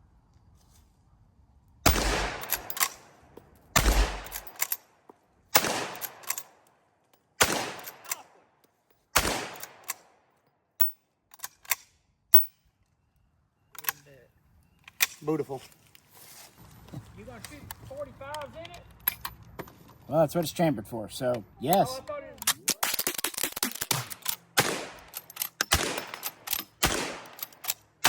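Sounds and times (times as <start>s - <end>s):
rifle shots: 1.8s - 3.1s, 3.7s - 4.7s, 5.5s - 6.6s, 7.4s - 8.4s, 9.1s - 10.1s, 22.7s - 27.7s.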